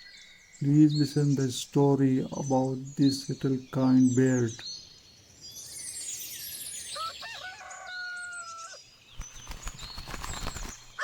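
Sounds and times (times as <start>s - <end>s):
small birds chirping: 0.0s - 11.0s
rooster crowing: 7.0s - 8.8s.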